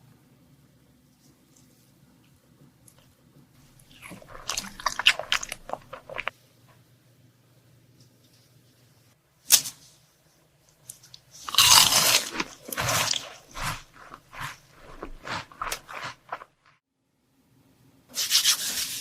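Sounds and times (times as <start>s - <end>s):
chocolate treats crunching: 3.7s - 6.3s, 11.4s - 16.8s.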